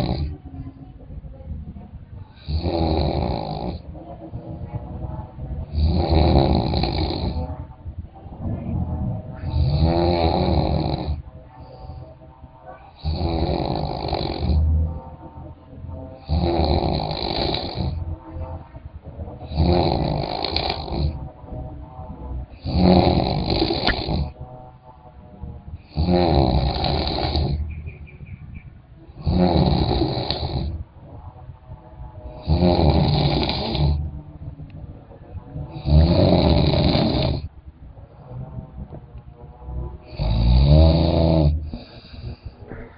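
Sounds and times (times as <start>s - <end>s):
person snoring: 0.0s - 0.3s, 2.3s - 3.9s, 5.6s - 7.6s, 9.4s - 12.3s, 12.9s - 18.6s, 19.4s - 21.7s, 22.4s - 24.4s, 25.8s - 27.7s, 29.1s - 31.3s, 32.2s - 34.1s, 35.5s - 37.5s, 39.7s - 42.9s
quiet breathing: 0.0s - 42.9s.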